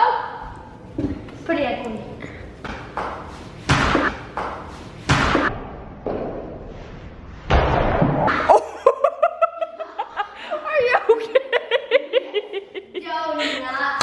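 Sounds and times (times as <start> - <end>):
heavy thuds and bangs echoing: 2.6 - 6.7, 7.4 - 8.3.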